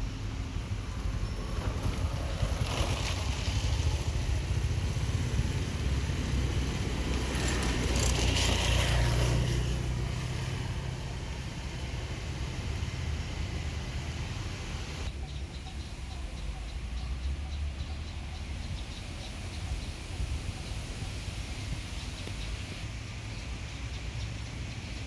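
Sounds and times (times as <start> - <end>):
rumble of motor traffic: 0.0 - 25.0
vehicle passing: 0.9 - 15.2.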